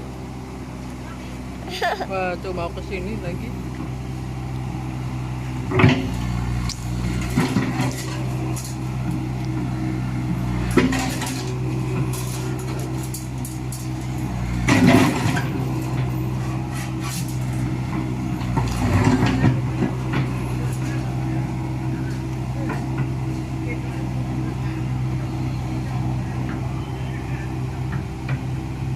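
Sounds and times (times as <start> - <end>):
excavator diesel engine running: 0.0 - 28.9
metallic clanks and scrapes: 5.7 - 9.2, 10.6 - 21.0.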